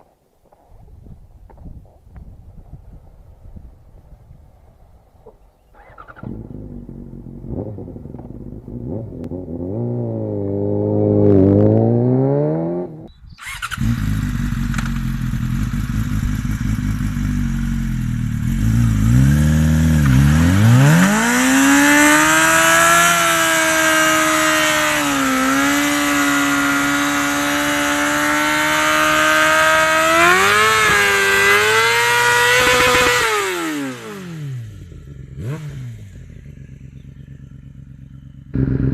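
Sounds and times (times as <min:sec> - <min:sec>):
motorcycle engine revving: 0:05.7 - 0:38.9
rear tyre squealing: 0:05.8 - 0:06.6.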